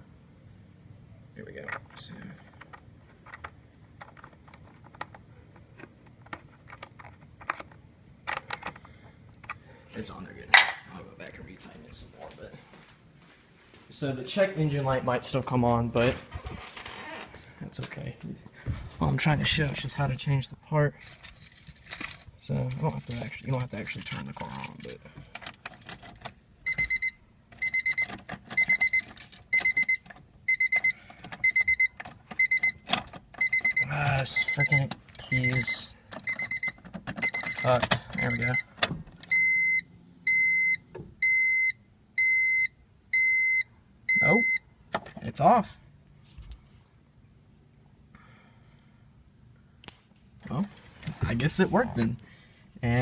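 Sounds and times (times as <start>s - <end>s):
keys rattling: 21.0s - 26.8s, 27.5s - 33.8s, 34.4s - 39.4s, 50.4s - 51.3s
car warning beeper: 26.7s - 44.8s.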